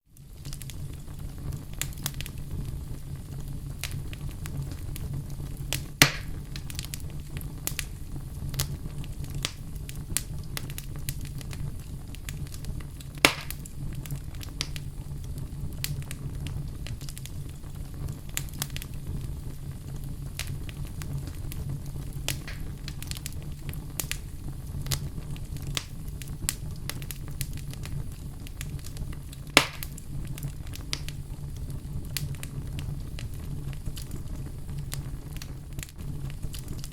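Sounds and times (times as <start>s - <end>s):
fireplace fire crackling: 0.0s - 36.9s
sharp loud pops: 6.0s - 6.4s, 13.2s - 13.7s, 29.6s - 30.0s.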